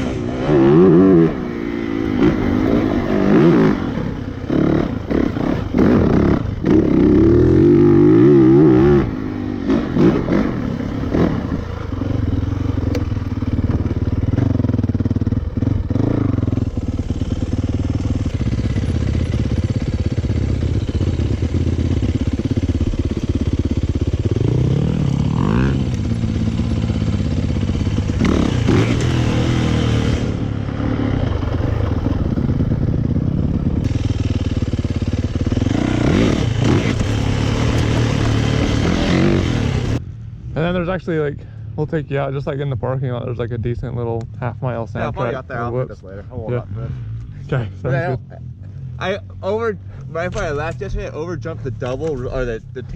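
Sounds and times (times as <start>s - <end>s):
dirt bike engine revving: 0.0s - 40.0s.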